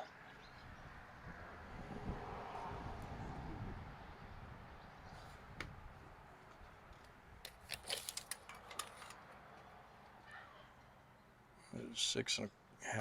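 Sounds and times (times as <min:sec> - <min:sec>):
hand tools clicking and rattling: 0:07.5 - 0:09.2.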